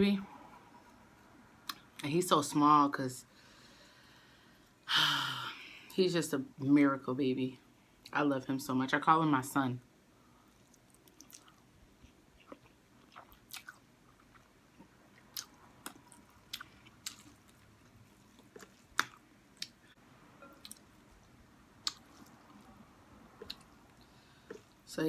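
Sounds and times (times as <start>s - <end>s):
person chewing noodles: 10.4s - 24.8s.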